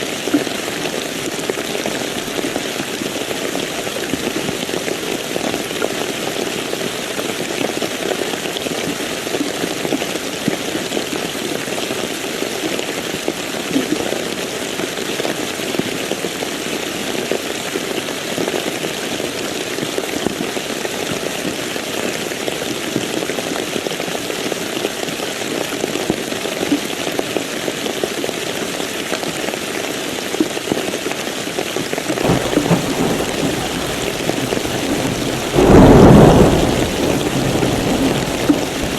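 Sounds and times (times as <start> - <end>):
steady rain: 0.0 - 24.7, 31.2 - 38.9
deep thunder rumble: 32.2 - 38.9.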